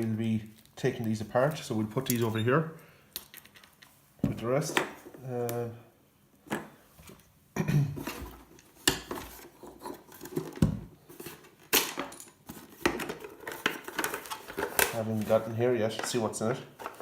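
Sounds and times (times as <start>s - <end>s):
small parts clinking and knocking: 3.1s - 4.0s.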